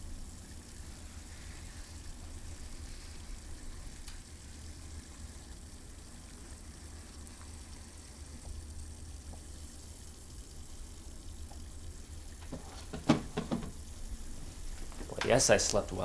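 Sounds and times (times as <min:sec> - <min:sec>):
steady hiss: 0:00.0 - 0:16.0
faint clicks: 0:04.0 - 0:04.3.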